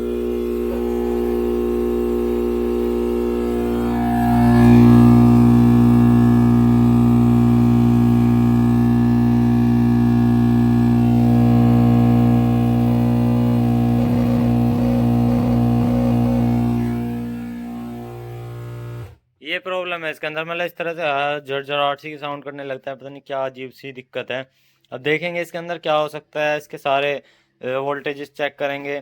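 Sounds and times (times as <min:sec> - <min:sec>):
speaker buzzing drone: 0:00.0 - 0:19.2.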